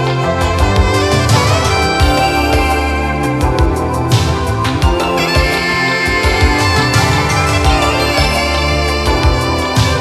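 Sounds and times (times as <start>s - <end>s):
steady low beat: 0.4s - 10.0s.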